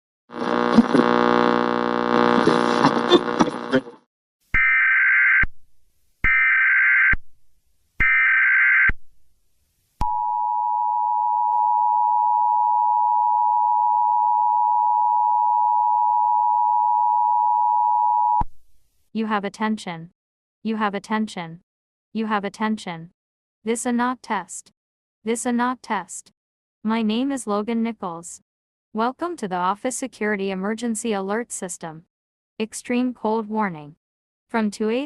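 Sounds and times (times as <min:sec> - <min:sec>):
loud buzzing: 0:00.3 - 0:04.0.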